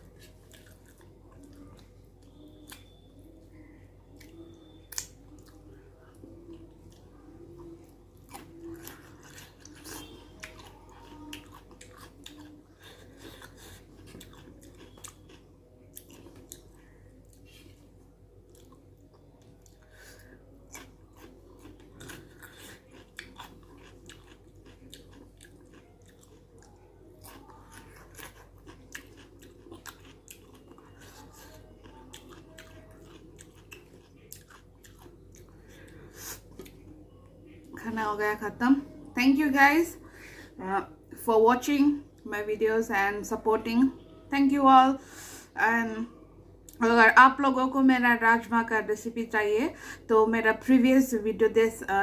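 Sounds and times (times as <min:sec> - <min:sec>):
person chewing: 0:00.0 - 0:37.8.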